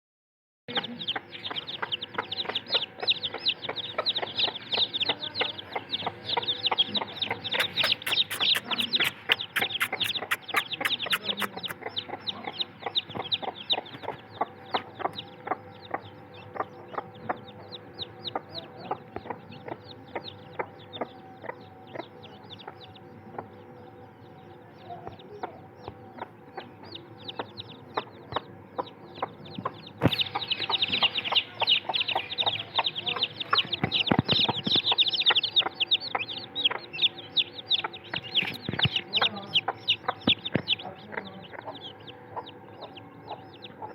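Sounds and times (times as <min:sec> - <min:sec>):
chickens clucking: 0:00.7 - 0:43.9
short high chirps: 0:07.6 - 0:11.8.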